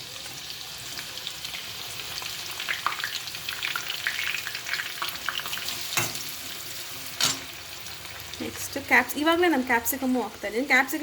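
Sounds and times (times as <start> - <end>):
onions sizzling in a frying pan: 0.0 - 11.0.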